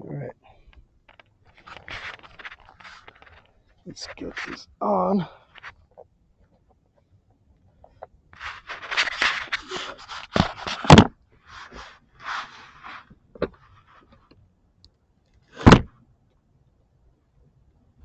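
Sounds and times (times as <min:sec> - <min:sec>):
hands rustling and scraping: 0:01.1 - 0:07.0, 0:07.6 - 0:14.3.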